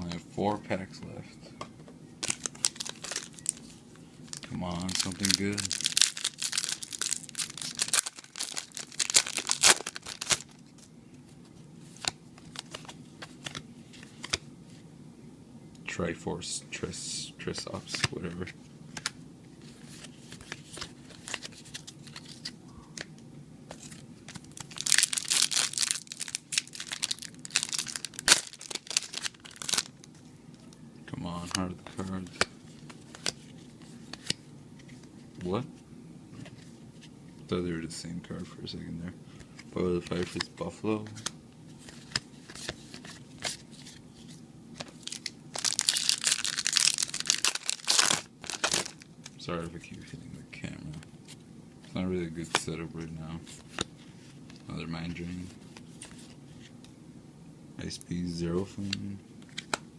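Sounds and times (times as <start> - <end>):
foil wrapper crinkling and tearing: 2.2 - 3.6, 4.3 - 10.6, 23.8 - 30.1, 44.8 - 49.1.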